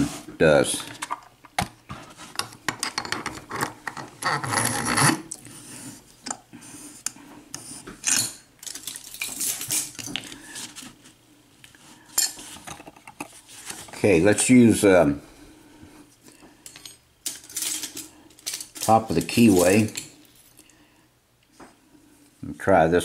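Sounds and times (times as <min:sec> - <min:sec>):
metal rubbing and scraping: 0:03.5 - 0:05.3.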